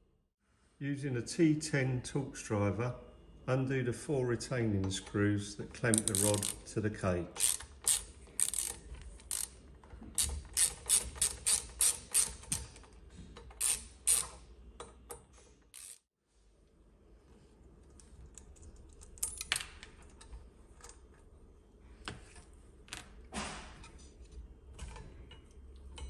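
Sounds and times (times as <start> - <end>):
screwdriver ratchet clicks: 5.9 - 6.6, 7.4 - 9.6, 10.2 - 12.7, 13.6 - 14.4, 15.8 - 16.0.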